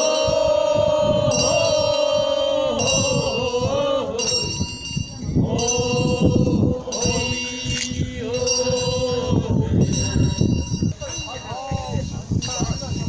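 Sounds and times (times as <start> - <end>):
person chanting: 0.0 - 12.2
handbell ringing: 2.8 - 13.0.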